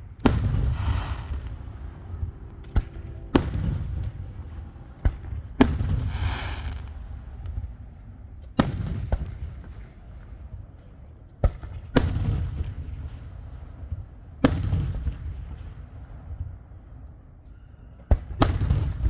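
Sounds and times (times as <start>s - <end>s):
fireworks bangs: 0.0s - 10.4s, 11.6s - 13.2s.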